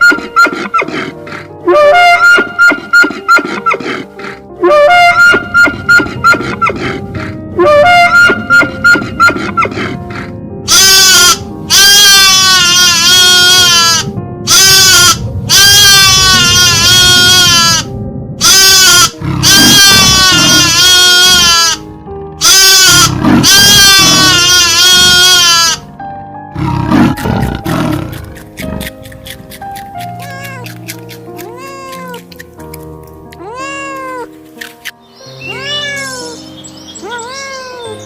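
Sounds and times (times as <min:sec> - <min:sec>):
background music: 0:00.0 - 0:38.0
animal calling high-pitched: 0:05.1 - 0:06.8, 0:07.7 - 0:09.8, 0:10.7 - 0:21.8, 0:22.4 - 0:25.8, 0:27.1 - 0:32.6, 0:33.4 - 0:38.0.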